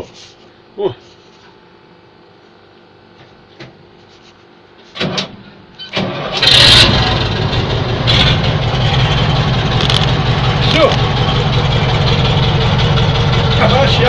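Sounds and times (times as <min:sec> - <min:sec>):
diesel truck engine starting: 0:05.9 - 0:14.0.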